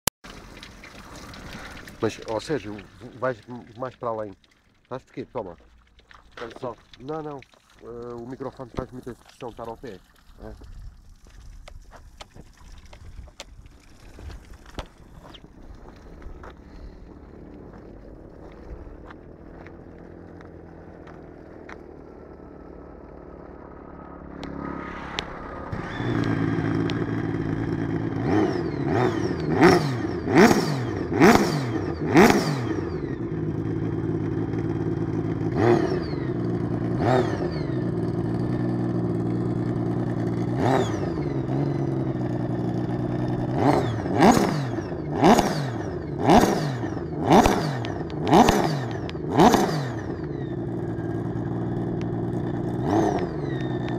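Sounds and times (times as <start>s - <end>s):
watercraft engine starting and revving: 13.4s - 53.9s.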